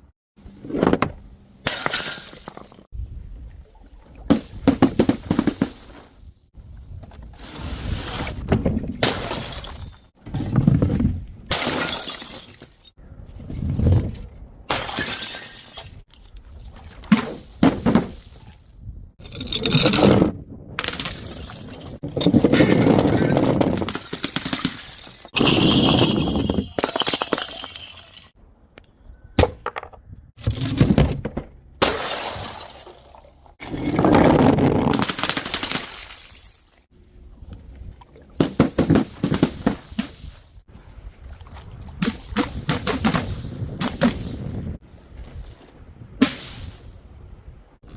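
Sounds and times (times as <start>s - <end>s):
glass bottles shattering: 9.0s - 10.1s, 11.5s - 13.0s, 14.7s - 16.1s, 20.8s - 28.3s, 31.8s - 33.2s, 34.9s - 36.9s
glass shards tinkling: 24.8s - 28.3s.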